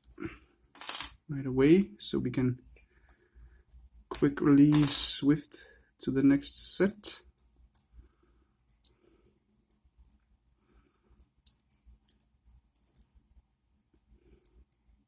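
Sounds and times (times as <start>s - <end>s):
metal lock picks clinking: 8.7s - 9.0s, 11.2s - 13.1s.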